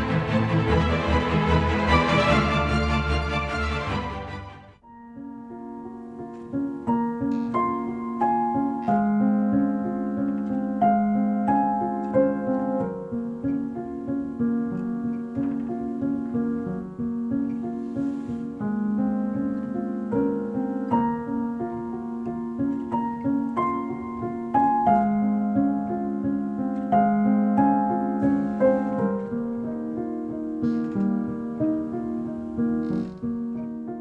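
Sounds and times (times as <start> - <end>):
piano music through speakers: 0.0 - 34.0.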